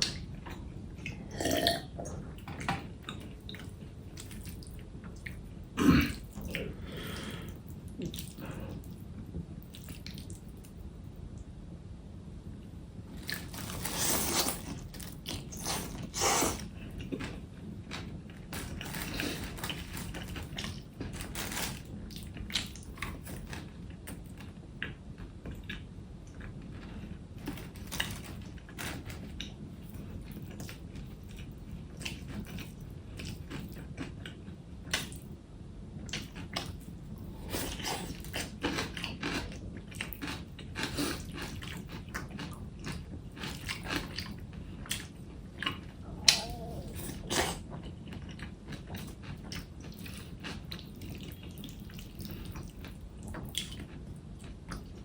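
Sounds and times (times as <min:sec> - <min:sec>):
person chewing crunchy food: 0:00.4 - 0:02.1, 0:13.2 - 0:24.2, 0:36.1 - 0:55.0.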